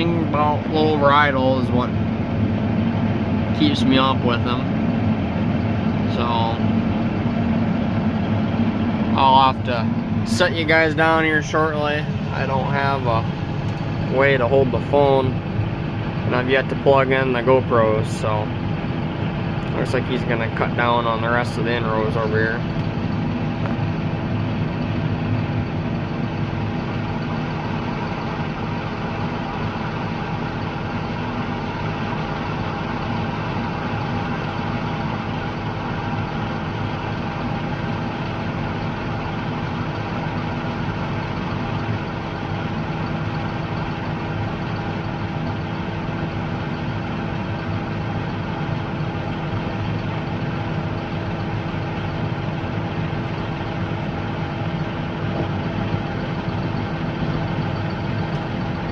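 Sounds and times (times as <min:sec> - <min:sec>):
diesel engine running: 0:00.0 - 0:58.9.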